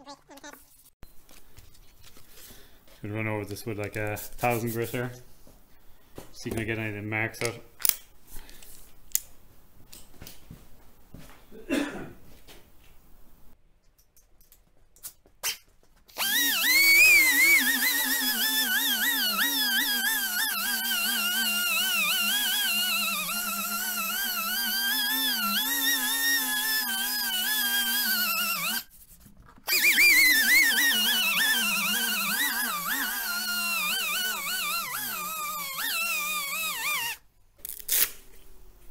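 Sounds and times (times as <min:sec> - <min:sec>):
power drill sanding plastic: 0:16.1 - 0:28.9, 0:29.6 - 0:37.2.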